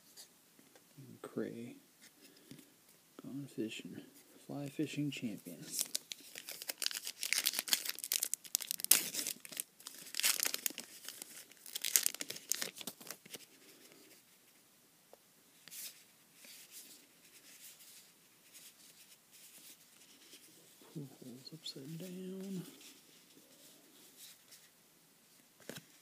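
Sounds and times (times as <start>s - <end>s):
wrapper tearing and crinkling: 5.6s - 13.4s.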